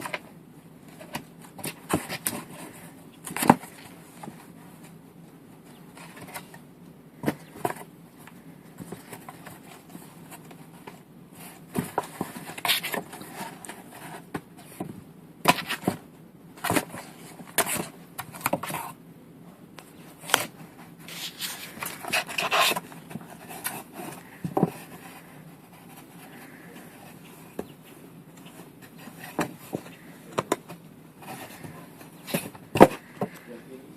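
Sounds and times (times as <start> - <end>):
faint steady hum: 0.0 - 33.9
cat moving in cardboard box: 7.2 - 19.0, 20.0 - 33.4.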